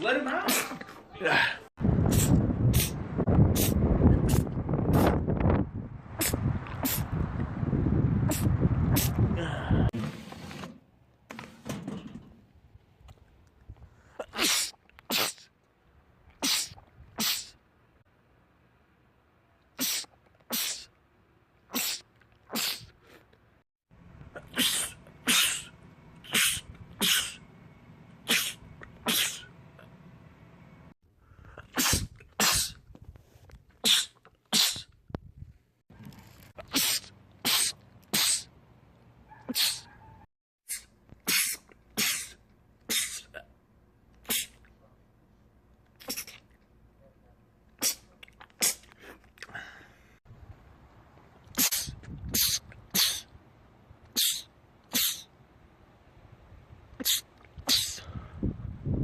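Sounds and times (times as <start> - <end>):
men sneezing: 0.4 - 2.3, 41.3 - 43.4, 54.2 - 55.3.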